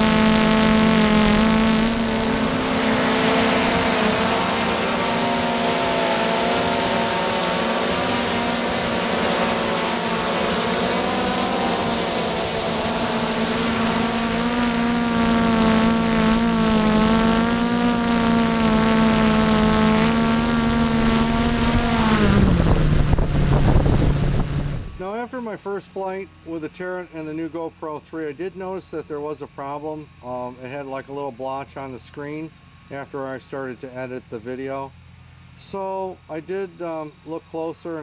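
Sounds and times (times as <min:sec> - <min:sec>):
multicopter motors buzzing: 0:00.0 - 0:25.2.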